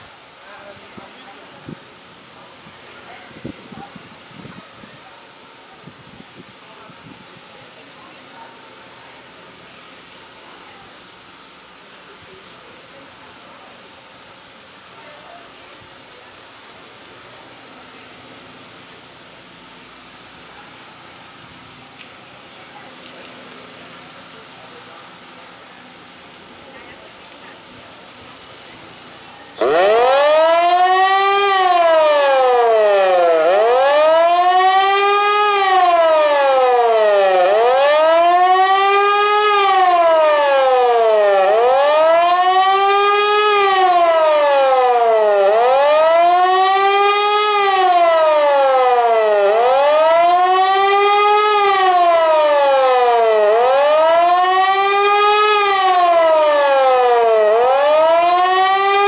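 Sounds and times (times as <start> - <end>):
wailing siren: 0.6 - 5.0, 27.0 - 59.0.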